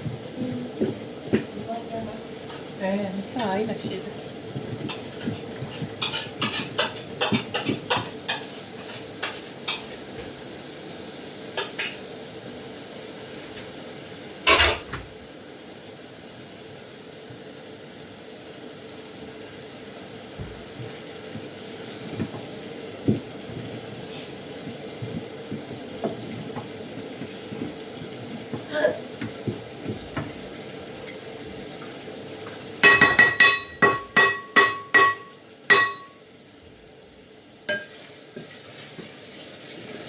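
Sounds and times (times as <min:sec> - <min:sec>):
metal pots and utensils clanking: 0:04.6 - 0:10.2, 0:11.5 - 0:12.1, 0:14.4 - 0:15.0, 0:32.8 - 0:36.2, 0:37.7 - 0:38.5.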